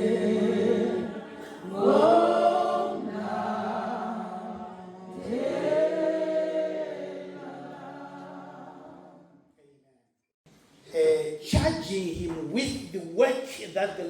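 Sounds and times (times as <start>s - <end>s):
choir singing in harmony: 0.0s - 9.4s.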